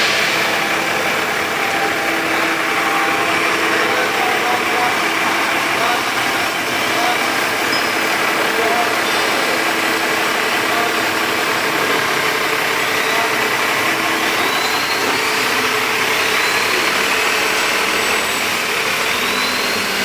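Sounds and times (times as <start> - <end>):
dense even hiss: 0.0 - 3.7
engine running steadily: 0.0 - 20.0.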